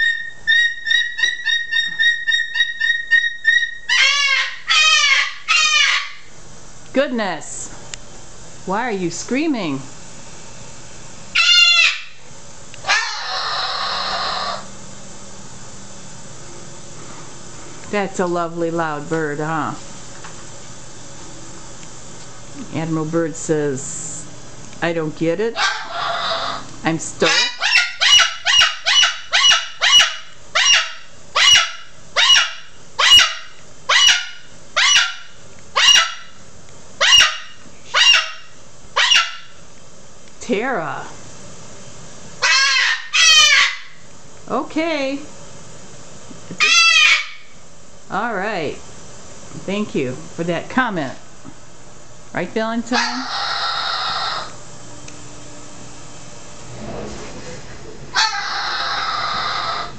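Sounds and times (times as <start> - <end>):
cockatoo screaming: 0.0 - 6.3, 11.4 - 12.2, 12.8 - 14.7, 25.6 - 36.4, 37.0 - 39.5, 42.4 - 44.0, 46.6 - 47.5, 52.9 - 54.6, 58.1 - 59.9.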